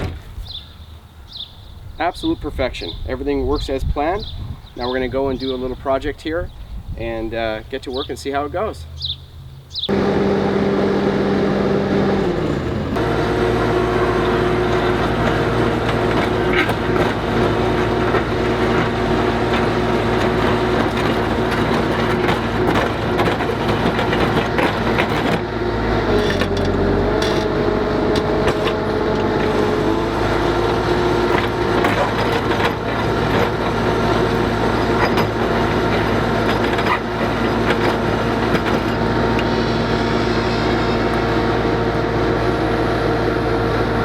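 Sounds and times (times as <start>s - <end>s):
skid steer engine running: 0.0s - 0.4s, 9.8s - 44.0s.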